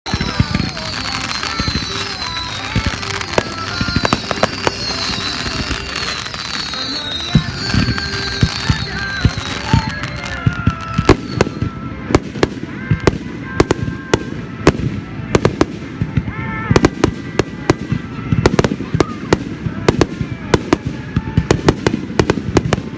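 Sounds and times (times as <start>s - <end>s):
fireworks bangs and pops: 0.0s - 22.9s.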